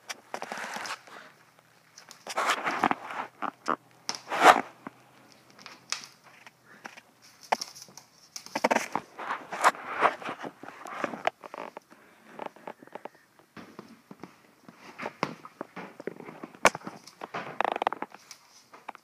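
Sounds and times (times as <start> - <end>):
dog scuffling and rustling: 1.9 - 3.4, 7.2 - 11.6.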